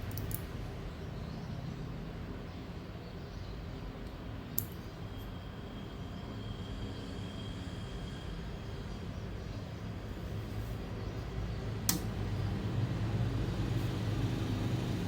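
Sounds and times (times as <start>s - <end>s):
sharp click: 11.9s - 12.1s.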